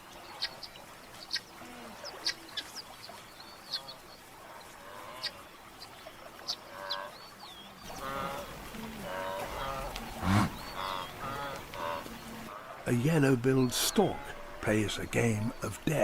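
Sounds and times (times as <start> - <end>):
nasal bird calls: 0.0 - 12.7
birds chirping: 0.0 - 16.0.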